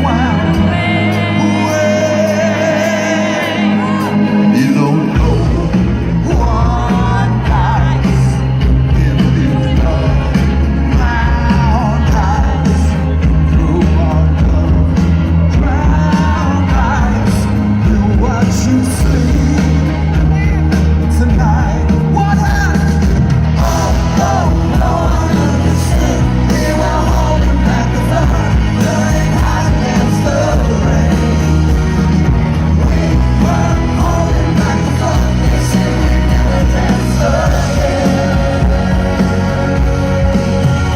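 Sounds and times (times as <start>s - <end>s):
man singing lead vocal: 0.0s - 40.9s
rock band playing: 0.0s - 40.9s.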